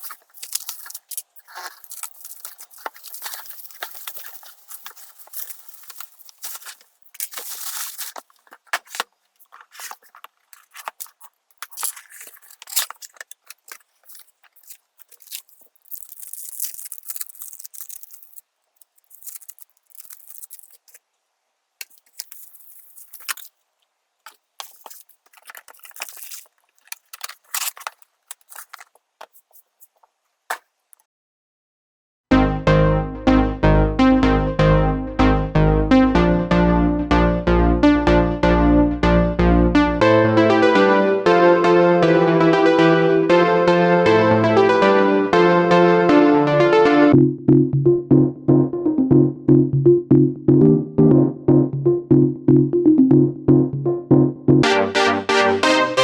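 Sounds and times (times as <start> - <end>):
packaging rustling and tearing: 0.0 - 21.0, 21.8 - 23.6, 24.3 - 30.7.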